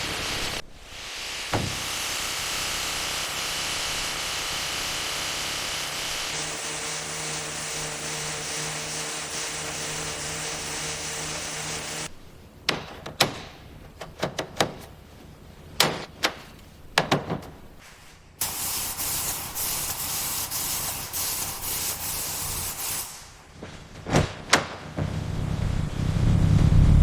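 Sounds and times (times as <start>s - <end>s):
steady hiss: 0.0s - 4.2s, 17.7s - 23.5s
sharp knocks and clanks: 12.6s - 15.0s, 15.8s - 17.7s.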